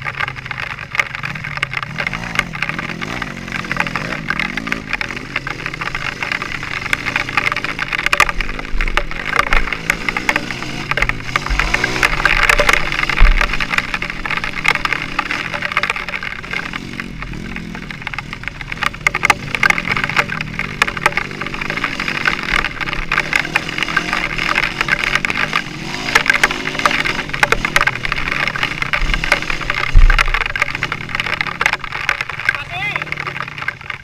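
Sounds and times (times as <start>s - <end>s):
crackling on microphone: 0.0s - 34.0s
engine-like drone: 0.0s - 34.0s.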